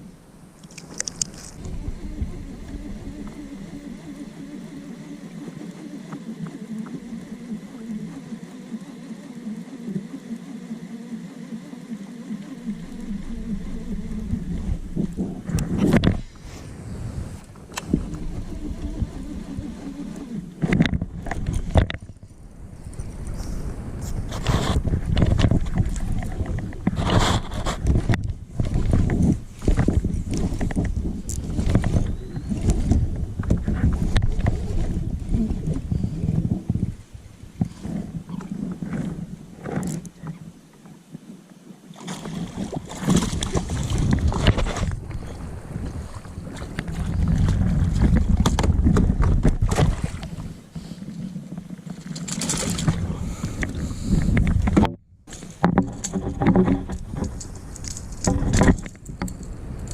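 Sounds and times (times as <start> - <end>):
wind rumble on microphone: 0.0 - 8.6, 12.3 - 59.9
knocks and bumps in kayak: 12.6 - 40.9, 42.0 - 59.9.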